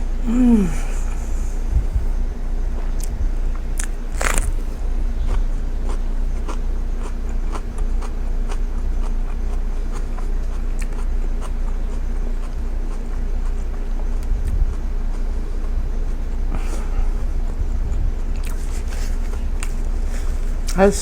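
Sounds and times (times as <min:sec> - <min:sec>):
low hum: 0:00.0 - 0:21.0
chewing food: 0:02.6 - 0:20.8
food crunch: 0:02.8 - 0:20.8.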